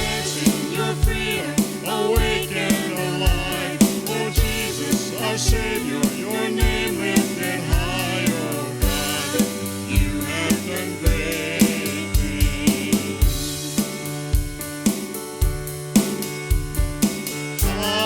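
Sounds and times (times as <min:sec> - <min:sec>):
voices singing: 0:00.0 - 0:14.1, 0:17.6 - 0:18.0
band playing a praise song: 0:00.0 - 0:18.0
drum kit beat: 0:00.0 - 0:18.0.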